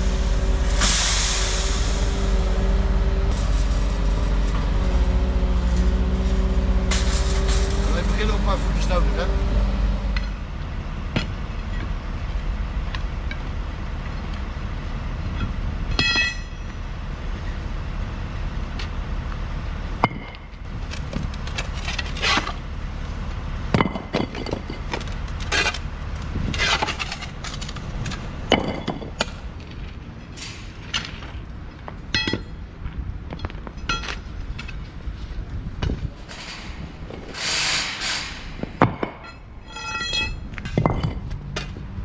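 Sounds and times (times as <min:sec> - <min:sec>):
excavator diesel engine running: 0:00.0 - 0:30.7
paving tiles knocking and cracking: 0:40.5 - 0:41.8.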